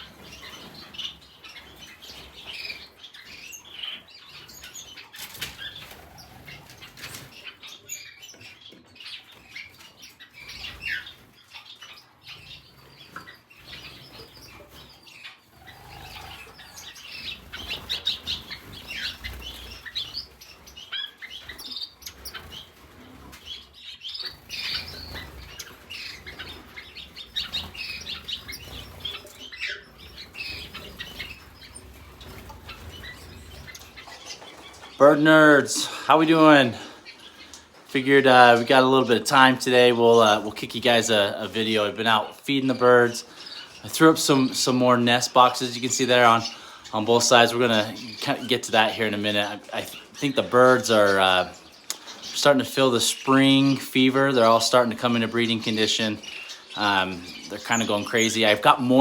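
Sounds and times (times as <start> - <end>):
small birds chirping: 0.0 - 59.0
wings fluttering: 4.3 - 7.6, 9.4 - 42.1.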